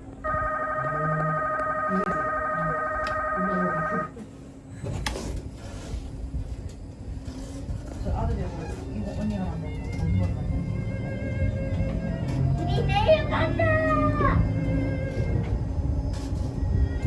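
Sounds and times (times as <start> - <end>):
electronic warbling ringtone: 0.3 - 4.1.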